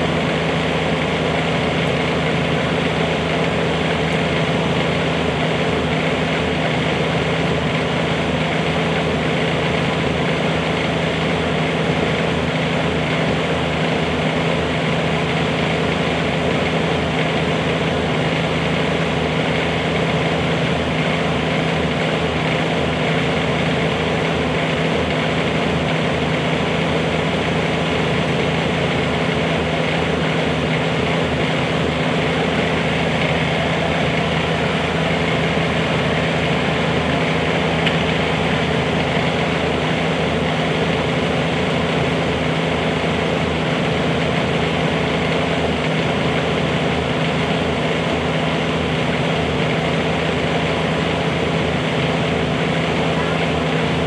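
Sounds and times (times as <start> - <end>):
diesel engine idling: 0.0 - 54.0.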